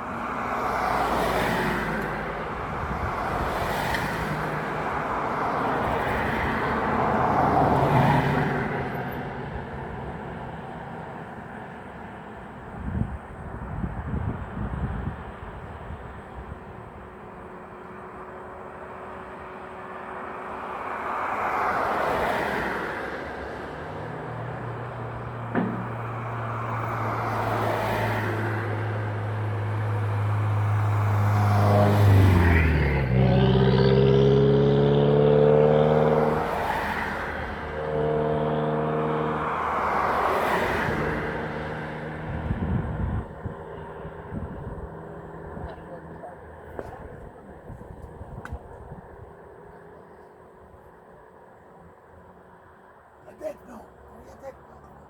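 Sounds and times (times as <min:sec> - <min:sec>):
vehicles passing: 0:00.0 - 0:55.0
heavy engine humming: 0:24.6 - 0:27.6.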